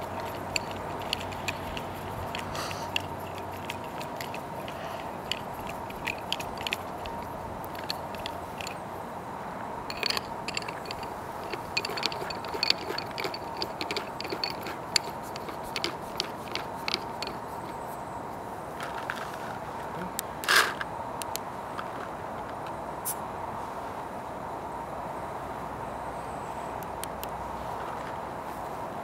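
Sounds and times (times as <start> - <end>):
small clicks and scrapes of parts: 0.0 - 8.8, 9.9 - 18.0, 18.8 - 23.2
faint steady hum: 0.0 - 29.0.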